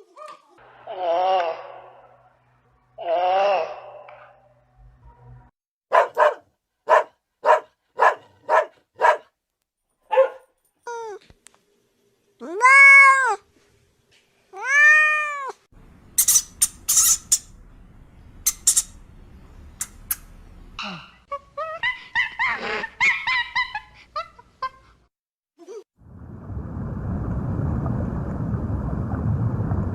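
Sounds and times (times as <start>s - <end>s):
cat meowing: 12.4s - 13.4s, 14.6s - 15.6s.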